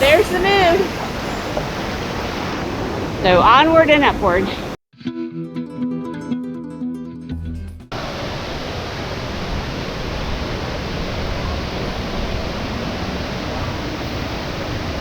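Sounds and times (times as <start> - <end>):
waterfall roaring: 0.0 - 4.8, 7.9 - 15.0.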